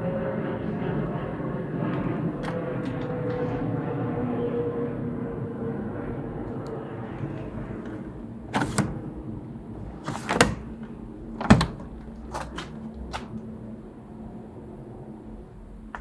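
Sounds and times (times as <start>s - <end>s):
washing machine hum: 0.0s - 16.0s
washing machine clunks and knocks: 7.2s - 13.4s.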